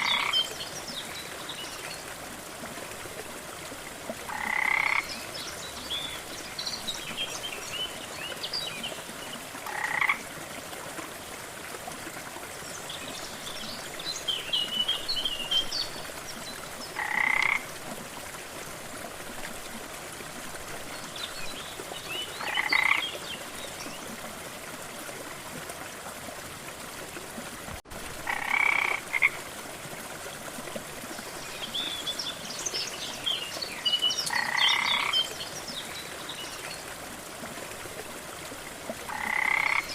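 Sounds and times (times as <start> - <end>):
frogs croaking: 0.0 - 0.6, 4.2 - 5.2, 9.6 - 10.3, 16.9 - 17.7, 22.4 - 23.2, 28.2 - 29.4, 34.3 - 35.4, 39.1 - 39.9
rushing water: 0.0 - 39.9.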